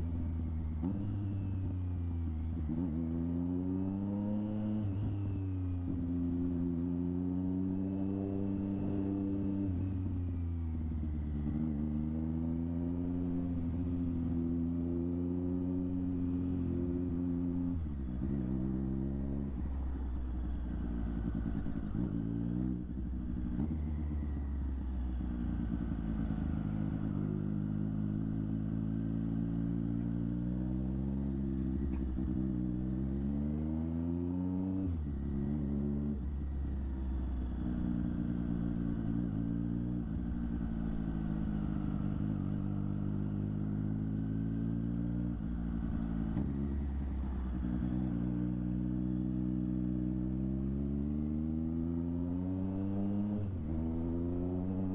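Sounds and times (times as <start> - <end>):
motorcycle engine revving: 0.0 - 54.9.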